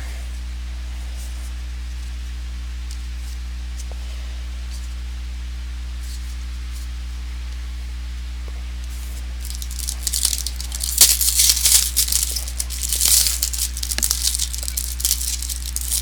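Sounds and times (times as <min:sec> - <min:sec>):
low electrical hum: 0:09.3 - 0:16.0
foil pack tearing and crinkling: 0:09.4 - 0:16.0.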